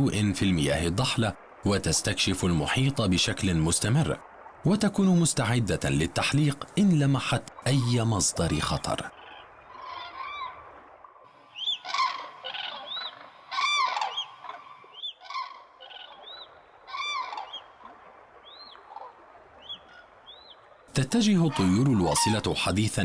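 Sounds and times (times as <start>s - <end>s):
cranes trumpeting calls: 9.1s - 22.6s.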